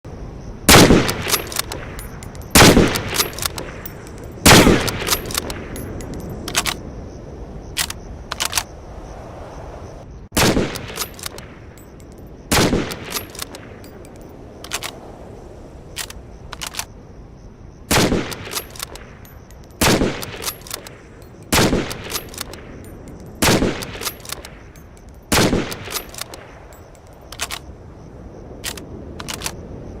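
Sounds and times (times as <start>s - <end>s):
rifle shots echoing: 0.7s - 6.7s, 10.4s - 11.5s, 12.5s - 13.6s, 17.9s - 22.7s, 23.4s - 24.6s, 25.3s - 26.6s
metallic clicks: 1.0s - 6.8s, 7.8s - 8.7s, 10.7s - 15.0s, 15.9s - 16.9s, 18.3s - 27.7s, 28.6s - 29.6s.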